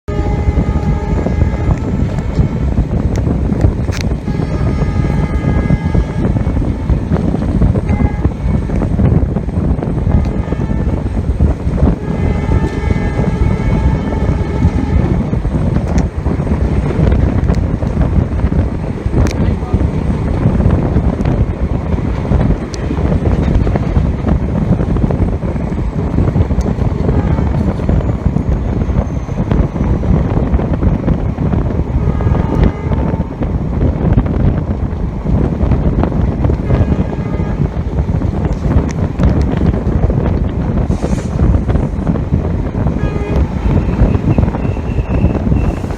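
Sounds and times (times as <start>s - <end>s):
express train rumbling: 0.0s - 45.9s
wind buffeting microphone: 0.0s - 45.9s
locomotive horn: 0.1s - 2.9s, 4.2s - 7.1s, 7.7s - 16.0s, 27.0s - 28.2s, 31.9s - 33.6s, 36.5s - 38.5s, 42.8s - 45.9s.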